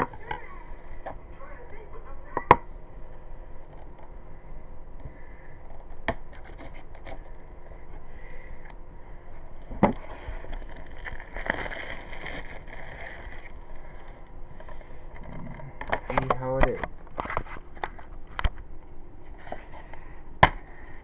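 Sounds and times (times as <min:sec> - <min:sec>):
packaging scraping and crackling: 0:05.7 - 0:07.4, 0:09.9 - 0:18.5.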